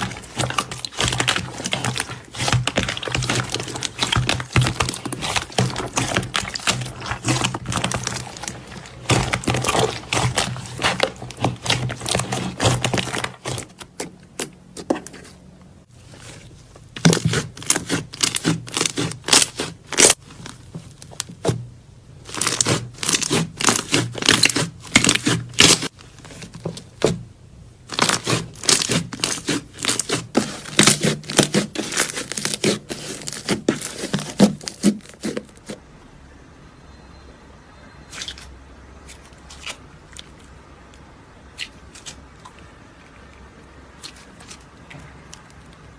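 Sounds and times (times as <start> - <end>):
slime crackling and popping: 0.0 - 14.5, 16.9 - 21.6, 22.2 - 26.2, 27.9 - 35.7.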